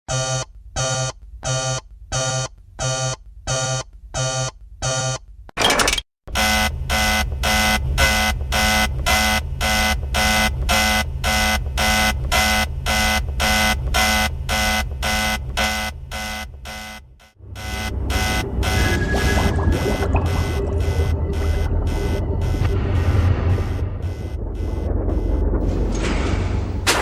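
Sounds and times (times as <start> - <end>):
electronic alarm beeping: 9.7 - 26.2.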